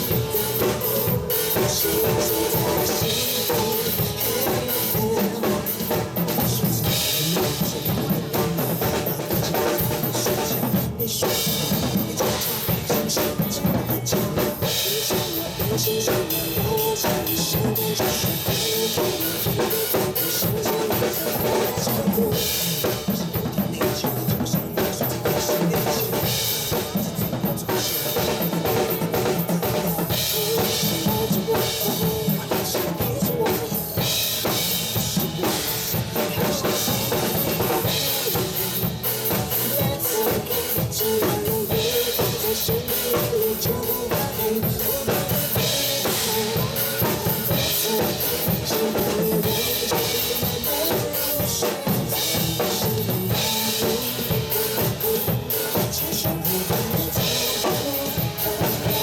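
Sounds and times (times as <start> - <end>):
drum kit playing: 0.0 - 59.0
music: 0.0 - 59.0.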